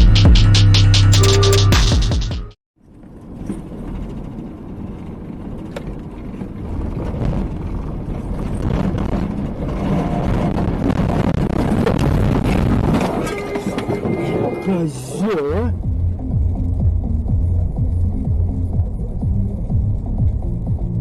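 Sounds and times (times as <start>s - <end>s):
music: 0.0s - 2.6s, 15.7s - 21.0s
car engine and road noise: 2.8s - 21.0s.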